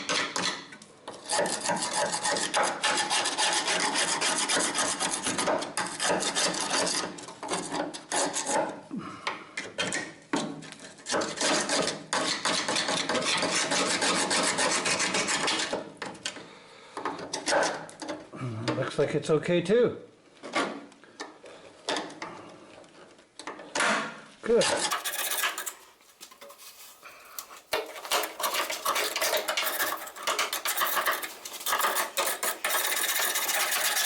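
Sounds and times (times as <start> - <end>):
scrubbing metal by hand: 24.6 - 34.0.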